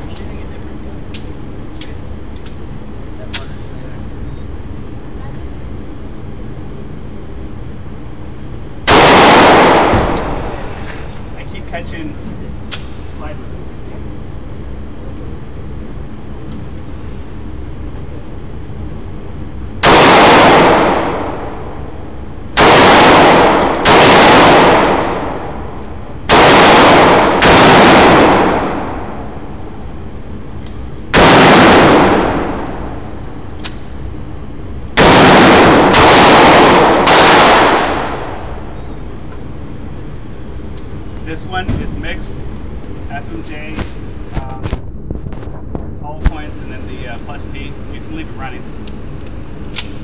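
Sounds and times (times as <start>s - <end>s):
pistol shots ringing out: 8.8s - 10.7s, 19.8s - 21.6s, 22.6s - 29.4s, 31.1s - 33.0s, 35.0s - 38.7s.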